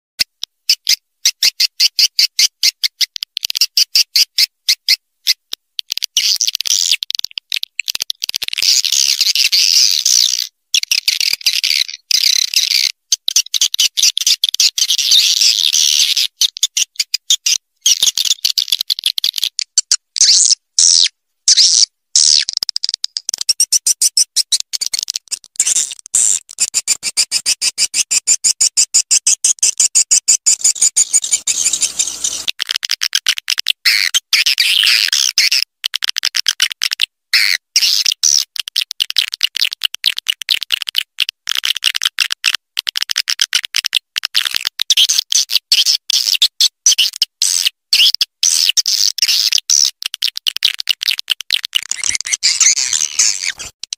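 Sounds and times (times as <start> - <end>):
swiftlet chattering twitter: 25.7 - 32.5, 51.8 - 53.8
swiftlet high chirps: 30.5 - 32.5.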